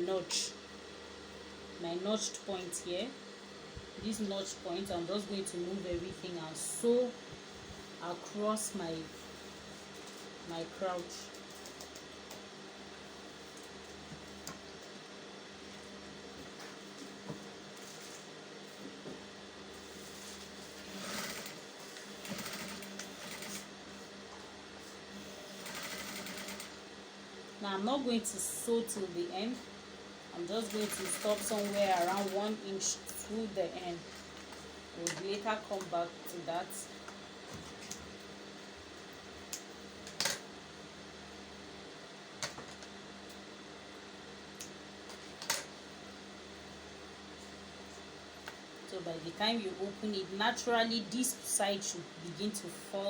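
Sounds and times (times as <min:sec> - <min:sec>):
steady low hum: 0:00.0 - 0:53.0
sewing machine humming: 0:20.0 - 0:23.7, 0:25.2 - 0:26.8, 0:30.4 - 0:32.6.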